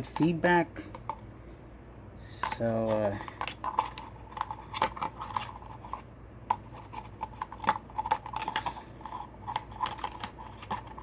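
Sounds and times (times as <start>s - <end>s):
small parts clicking and tapping: 2.3s - 11.0s.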